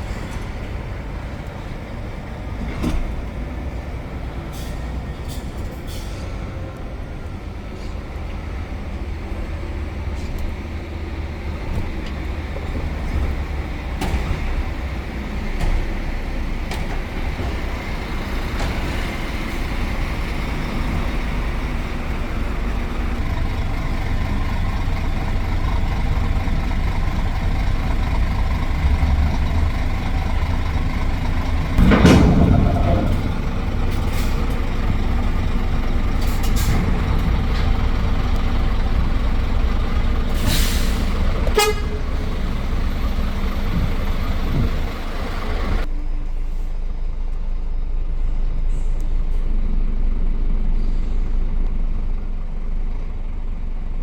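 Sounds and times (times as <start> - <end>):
truck engine rumbling: 0.0 - 54.0
loud burst: 31.8 - 34.4.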